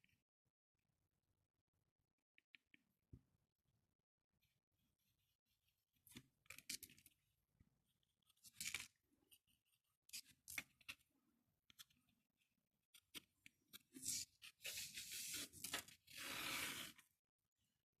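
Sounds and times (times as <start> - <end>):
cardboard creaking and scraping: 14.1 - 17.0.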